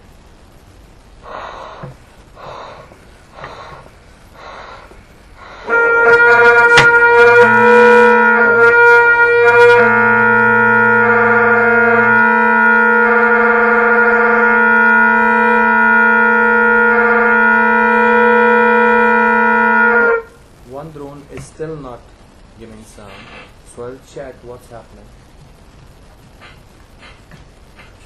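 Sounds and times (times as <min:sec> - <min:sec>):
bagpipe tenor drones: 0:01.2 - 0:20.4
unsteady bagpipe bass drone: 0:01.2 - 0:20.4.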